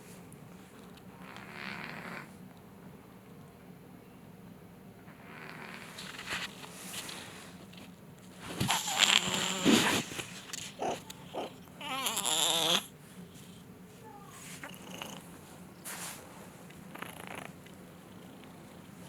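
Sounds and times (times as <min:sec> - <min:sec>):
cat trilling: 0:10.7 - 0:12.9.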